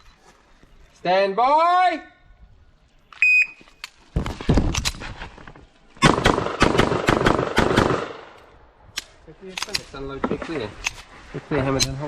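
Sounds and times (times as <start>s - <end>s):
pistol shots: 6.0s - 8.4s.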